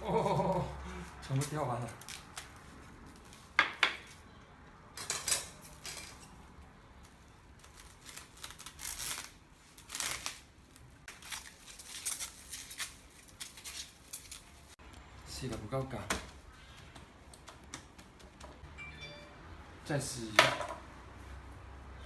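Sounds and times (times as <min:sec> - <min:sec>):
plastic cling film crinkling: 0:00.3 - 0:04.3, 0:05.6 - 0:14.8.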